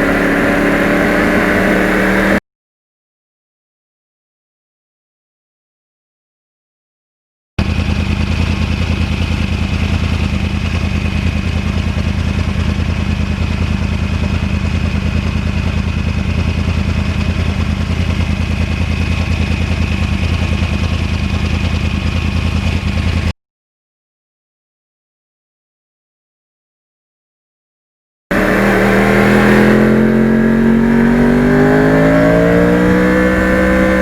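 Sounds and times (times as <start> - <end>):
motorcycle engine running steadily: 0.0 - 2.4, 7.6 - 23.3, 28.3 - 34.0
thin steady whine: 28.3 - 31.6.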